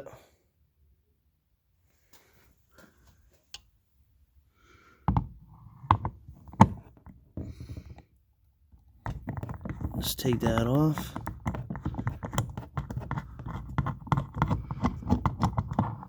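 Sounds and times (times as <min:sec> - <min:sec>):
tool and plastic handling: 0:08.8 - 0:16.0.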